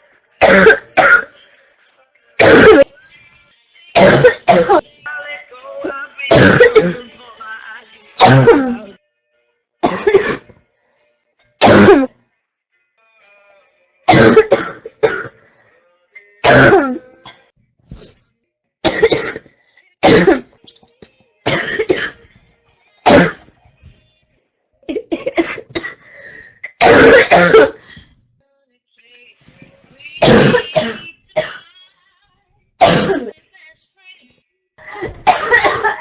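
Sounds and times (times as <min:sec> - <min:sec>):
girl barking cough: 0:00.4 - 0:01.3, 0:02.4 - 0:02.9, 0:04.0 - 0:04.8, 0:06.3 - 0:07.0, 0:08.2 - 0:08.9, 0:09.8 - 0:10.4, 0:11.6 - 0:12.1, 0:14.1 - 0:15.3, 0:16.5 - 0:17.0, 0:18.9 - 0:20.5, 0:21.5 - 0:22.2, 0:23.1 - 0:23.4, 0:26.7 - 0:27.8, 0:30.2 - 0:31.6, 0:32.8 - 0:33.3, 0:35.2 - 0:36.0.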